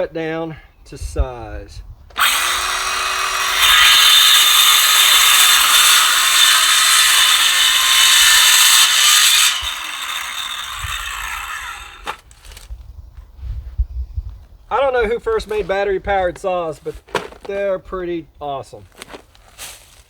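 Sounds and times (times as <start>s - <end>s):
power saw cutting wood: 2.2s - 12.6s.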